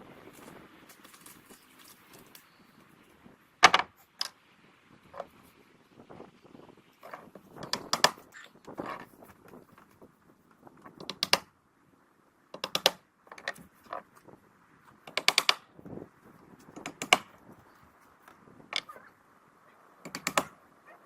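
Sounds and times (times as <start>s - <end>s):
nails being hammered: 12.6s - 13.4s, 15.1s - 15.7s, 16.8s - 17.4s, 20.0s - 20.5s.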